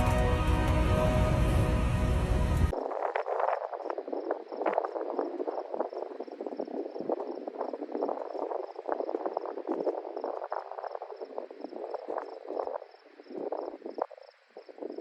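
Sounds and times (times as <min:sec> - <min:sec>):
frogs croaking: 0:03.2 - 0:15.0.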